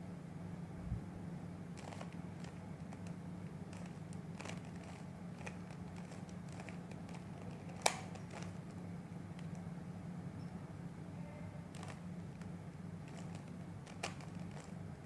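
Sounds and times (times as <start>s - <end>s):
steady low hum: 0.0s - 15.0s
plastic cube twisting clicks: 1.8s - 9.7s, 11.7s - 14.8s.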